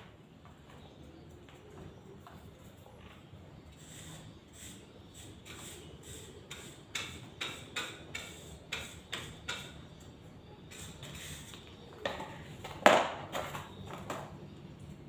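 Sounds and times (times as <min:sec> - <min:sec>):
hand tool scraping cement: 0:03.8 - 0:09.8.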